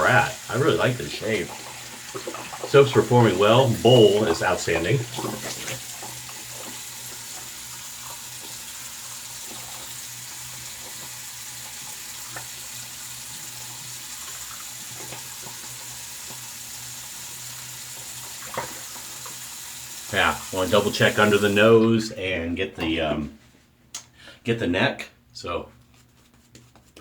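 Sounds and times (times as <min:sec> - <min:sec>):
sink tap running: 0:00.0 - 0:22.1.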